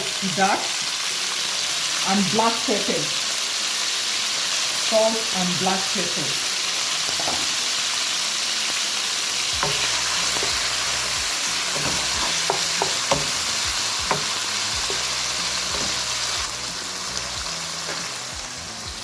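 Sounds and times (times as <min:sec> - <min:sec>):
meat sizzling in a pan: 0:00.0 - 0:19.0
utensil knocking against pan: 0:09.6 - 0:10.6, 0:11.7 - 0:16.1.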